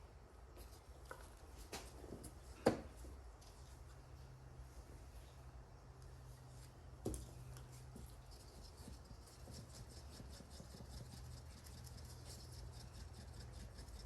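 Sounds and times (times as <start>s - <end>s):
low steady hum: 0.0s - 14.0s
rapid scratching and ticking: 8.2s - 14.0s.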